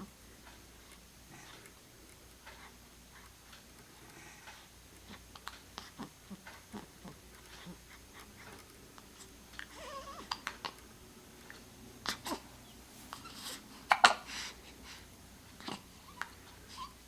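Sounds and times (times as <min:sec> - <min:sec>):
animal hiccuping: 0:05.8 - 0:07.8.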